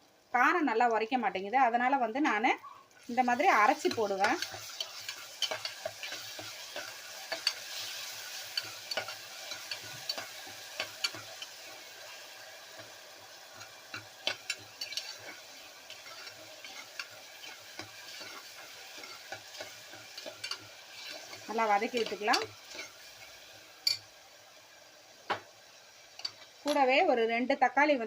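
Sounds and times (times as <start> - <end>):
onions sizzling in oil: 0.0 - 28.0
spoon scraping and clicking on pot: 3.9 - 7.9, 8.5 - 11.6, 13.6 - 22.9.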